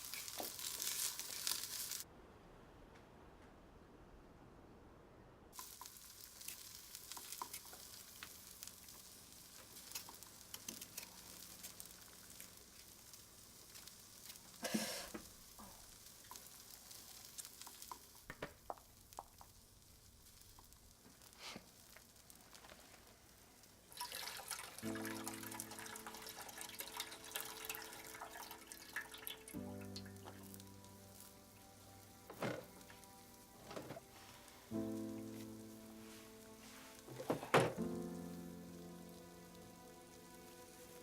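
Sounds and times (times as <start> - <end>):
water hissing: 0.0 - 2.0, 23.9 - 41.0
water dripping: 5.6 - 21.2, 23.8 - 33.6.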